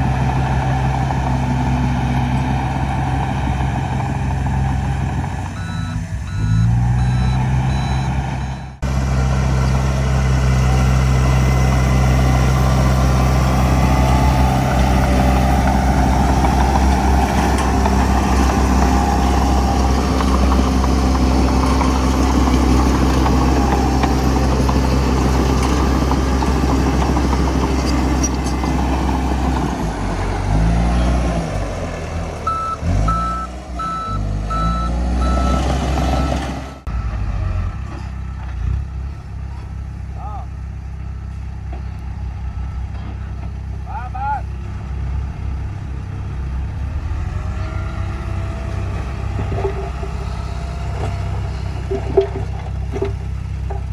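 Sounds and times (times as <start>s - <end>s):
heavy diesel engine under load: 0.0s - 53.9s
reversing alarm beeping: 5.6s - 8.8s, 32.4s - 37.6s.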